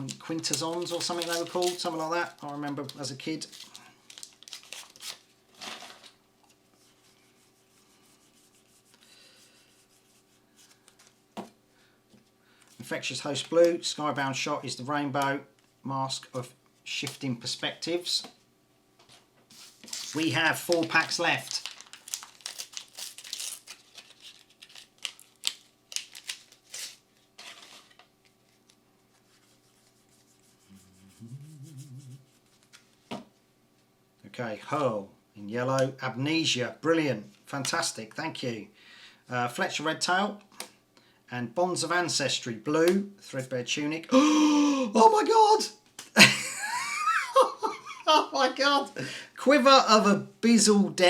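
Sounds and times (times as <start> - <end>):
low steady hum: 0.0 - 39.5
trading cards rubbing together: 19.5 - 20.3, 29.1 - 33.0
low wavering hum: 30.6 - 32.4.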